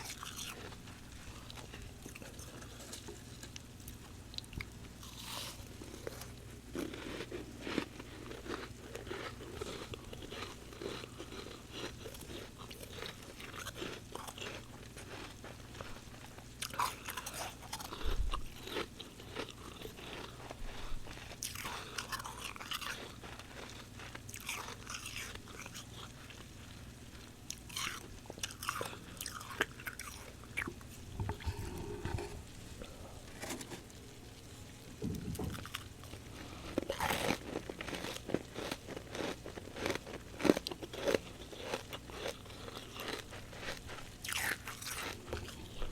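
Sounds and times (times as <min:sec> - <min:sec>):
crunching frost being chewed: 0:00.0 - 0:45.9.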